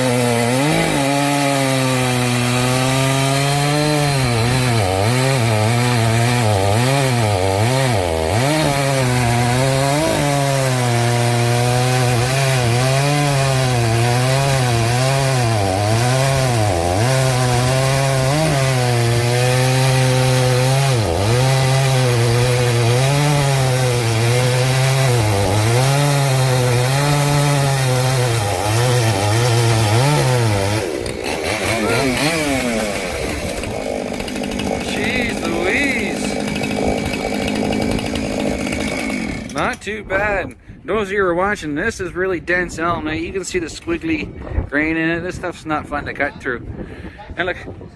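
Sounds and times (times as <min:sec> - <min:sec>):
chainsaw cutting wood: 0:00.0 - 0:39.8.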